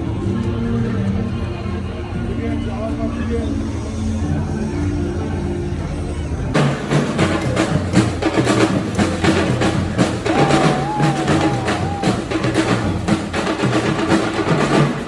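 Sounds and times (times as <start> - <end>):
quick steady drum beat: 6.6 - 15.0.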